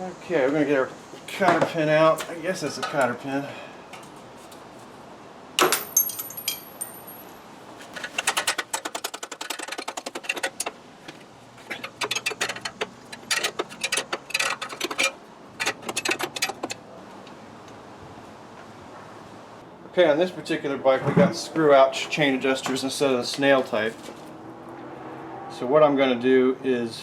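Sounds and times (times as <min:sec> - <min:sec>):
sharp metallic clink: 0:05.6 - 0:07.3.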